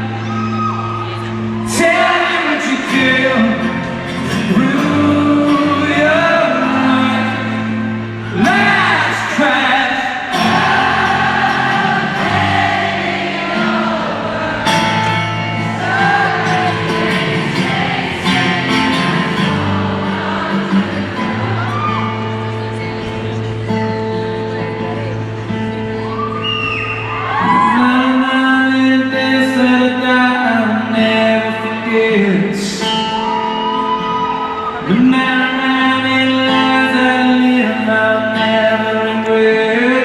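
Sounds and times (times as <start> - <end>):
person singing: 1.0 - 26.0, 27.4 - 40.0
sustained keyboard chords: 10.3 - 26.1.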